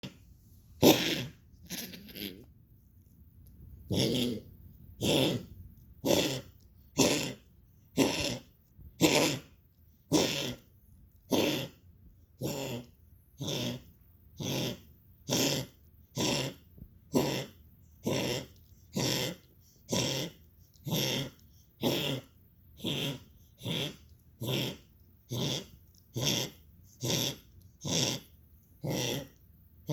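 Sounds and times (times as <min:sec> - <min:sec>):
dog coughing: 0:00.8 - 0:02.3.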